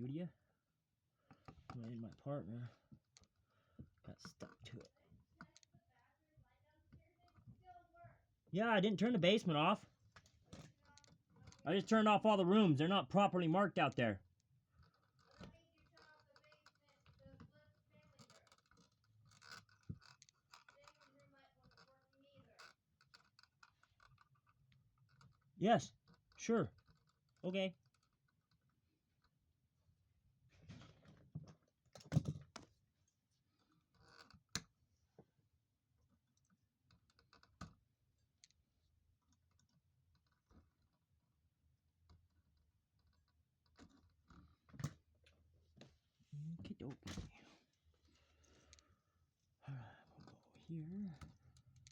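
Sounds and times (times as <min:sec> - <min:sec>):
small clicks and scratching: 0:01.2 - 0:08.4, 0:09.0 - 0:12.1, 0:13.9 - 0:51.9
small objects clicking and knocking: 0:14.8 - 0:25.5.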